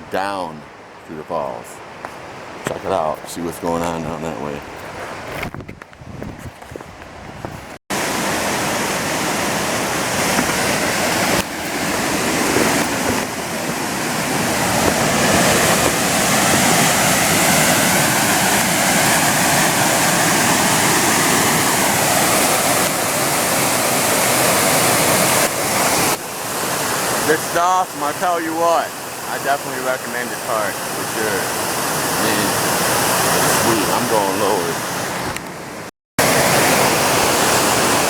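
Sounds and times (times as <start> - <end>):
waterfall rushing: 7.9 - 38.0.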